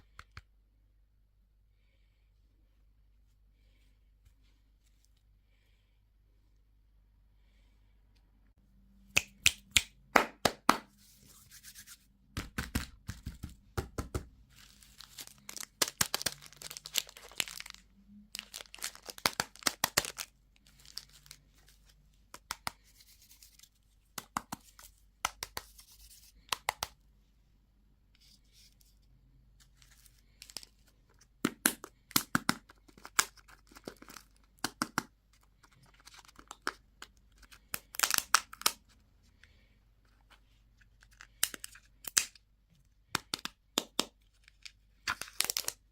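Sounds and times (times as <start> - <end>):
packaging crinkling and tearing: 14.5 - 21.4, 37.4 - 38.8, 44.6 - 45.9.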